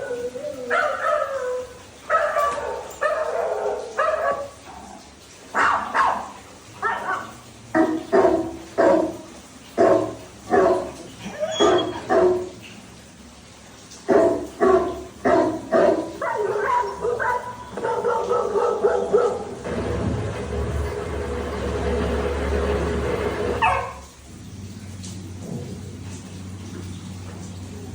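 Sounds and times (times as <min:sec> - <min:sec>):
dog barking: 0:00.7 - 0:04.6, 0:05.5 - 0:09.2, 0:09.8 - 0:12.6, 0:14.1 - 0:19.8, 0:23.6 - 0:24.1
low rumble: 0:19.6 - 0:23.6
dog drawn-out calls: 0:23.2 - 0:24.2.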